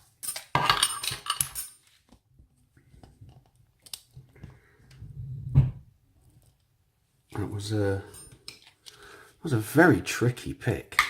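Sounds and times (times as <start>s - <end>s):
small metal parts clinking: 0.2s - 1.9s.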